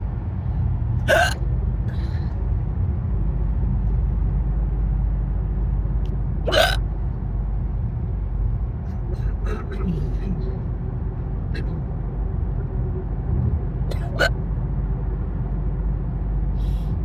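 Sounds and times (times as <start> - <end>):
car rumbling on road: 0.0 - 17.0
woman hiccupping: 1.1 - 1.4, 6.5 - 6.8, 13.9 - 14.3.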